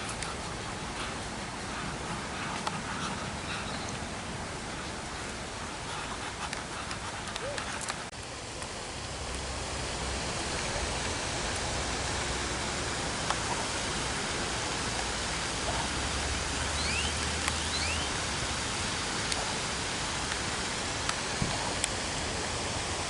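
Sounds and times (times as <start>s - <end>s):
falling water hiss: 0.0s - 23.0s
bird chirps: 16.8s - 18.1s.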